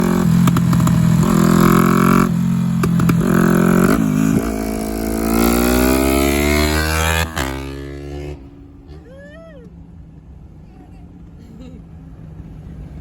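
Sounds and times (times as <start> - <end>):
motorcycle engine revving: 0.0 - 9.1.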